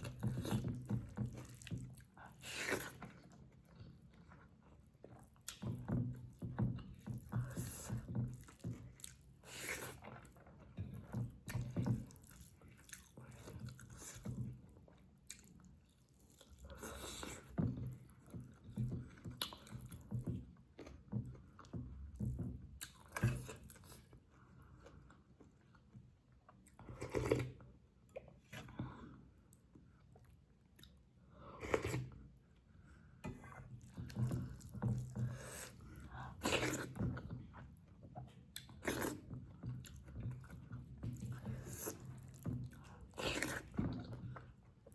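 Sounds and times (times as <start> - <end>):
wet chewing and mouth smacks: 33.4 - 44.9.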